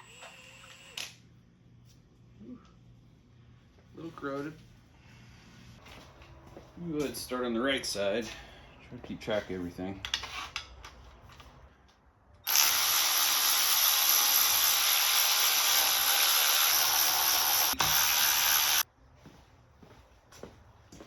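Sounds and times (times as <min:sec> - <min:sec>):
power tool whirring: 0:12.4 - 0:18.8.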